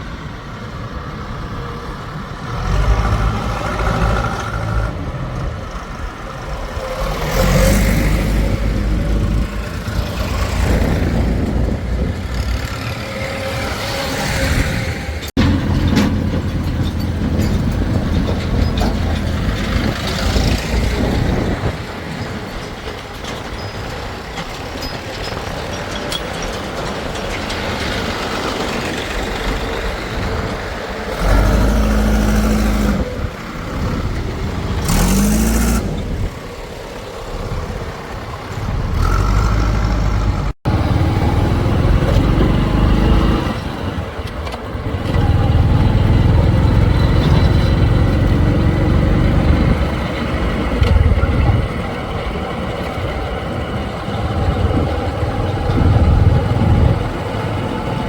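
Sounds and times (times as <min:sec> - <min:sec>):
heavy machinery diesel engines: 0:00.0 - 0:58.0.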